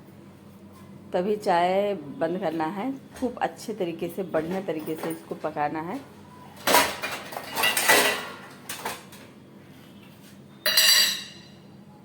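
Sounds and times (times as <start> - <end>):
metal pots and utensils clattering: 6.6 - 9.2, 10.7 - 11.6
ringing metallic clang: 10.6 - 11.7.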